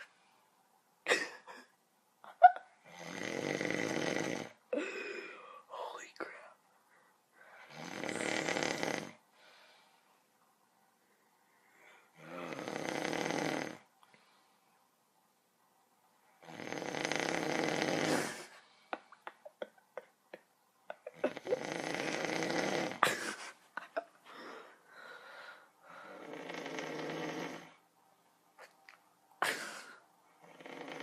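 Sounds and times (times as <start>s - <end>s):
person snoring: 2.8s - 5.6s, 7.6s - 9.2s, 12.0s - 13.9s, 16.4s - 18.6s, 21.1s - 23.2s, 25.9s - 27.8s, 29.4s - 31.0s.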